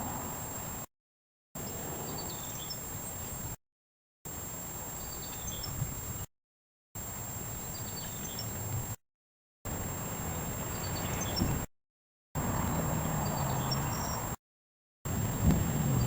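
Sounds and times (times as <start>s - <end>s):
outdoor background hiss: 0.0s - 0.9s, 1.6s - 3.6s, 4.3s - 6.3s, 7.0s - 9.0s, 9.7s - 11.7s, 12.4s - 14.4s, 15.1s - 16.0s
faint bird chirps: 1.6s - 3.5s, 4.9s - 6.2s, 7.6s - 8.6s, 10.7s - 11.6s, 13.2s - 14.3s.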